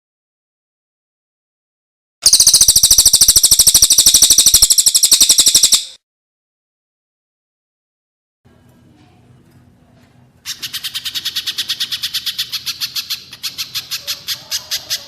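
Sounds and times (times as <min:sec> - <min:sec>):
songbird fast trill: 0:02.2 - 0:06.0.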